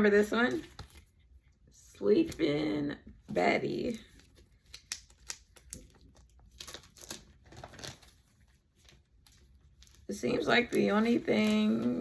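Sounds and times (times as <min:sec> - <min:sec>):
packaging crinkling: 0:03.9 - 0:12.0.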